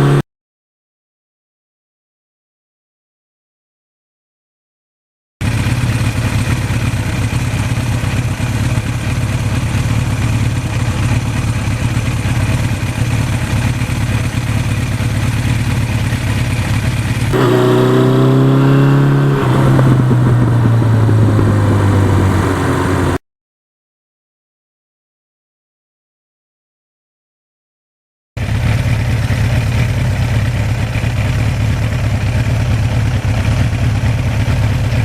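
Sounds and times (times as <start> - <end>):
motorcycle engine running: 0.0 - 0.2, 5.4 - 23.2, 28.4 - 35.0.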